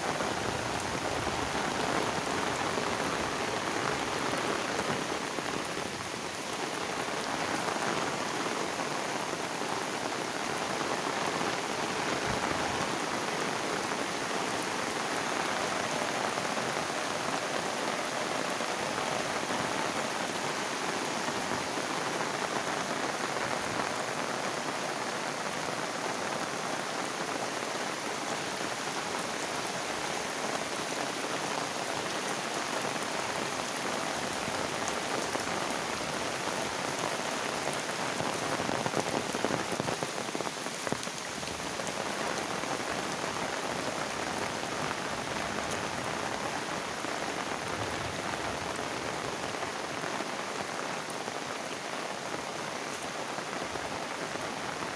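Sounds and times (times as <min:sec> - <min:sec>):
heavy rain on hard surfaces: 0:00.0 - 0:54.9.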